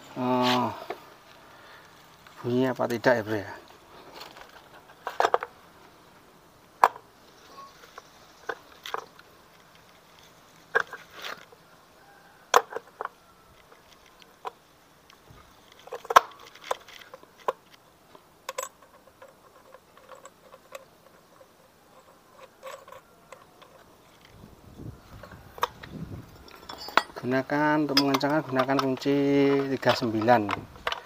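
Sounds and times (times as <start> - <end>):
metal parts clinking and knocking: 4.2 - 5.6, 6.8 - 11.6, 12.5 - 17.8, 18.4 - 24.4, 25.0 - 31.0.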